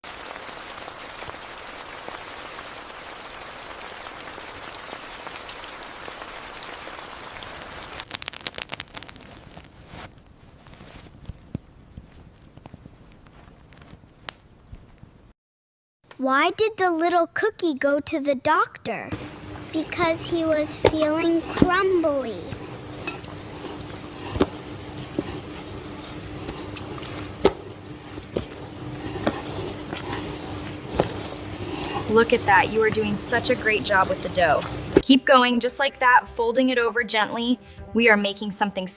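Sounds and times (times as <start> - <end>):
rain pattering: 0.0 - 15.0, 19.2 - 35.0
steady low hum: 19.1 - 35.0.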